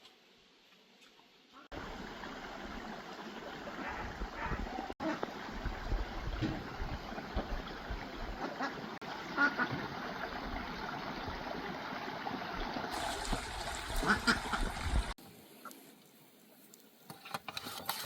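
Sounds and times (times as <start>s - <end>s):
running water: 1.7s - 15.2s.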